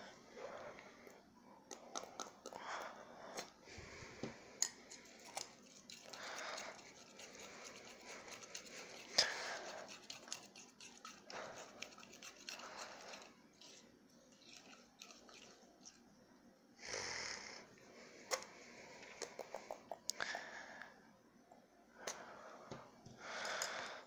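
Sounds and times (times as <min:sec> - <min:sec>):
airy slime squelch: 0:04.8 - 0:16.1.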